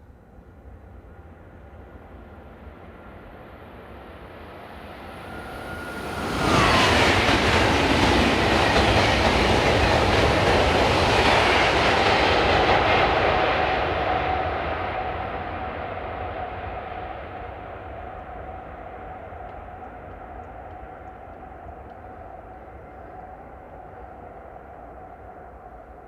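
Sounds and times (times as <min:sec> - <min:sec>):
high-speed train passing: 0:00.0 - 0:26.0.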